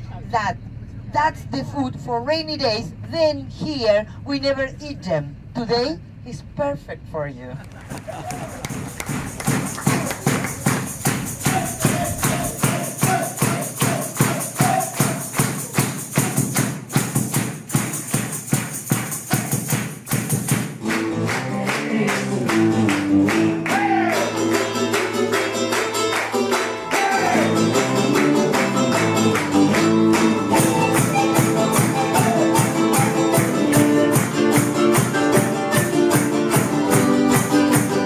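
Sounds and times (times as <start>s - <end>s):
steady percussion beat: 8.1s - 38.0s.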